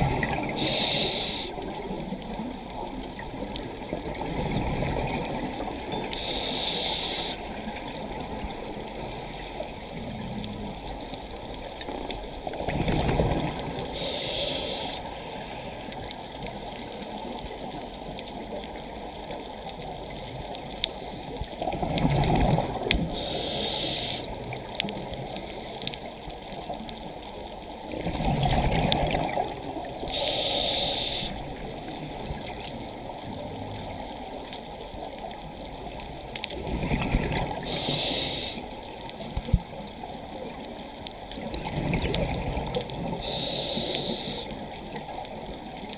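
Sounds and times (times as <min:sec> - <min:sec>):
exhaled bubbles gurgling: 0:00.0 - 0:16.8, 0:21.4 - 0:25.8, 0:26.5 - 0:45.9
water noise: 0:00.0 - 0:45.9
regulator inhalation hiss: 0:00.5 - 0:01.6, 0:06.1 - 0:07.5, 0:13.8 - 0:15.6, 0:23.1 - 0:24.4, 0:30.1 - 0:31.4, 0:37.6 - 0:38.7, 0:43.2 - 0:44.6.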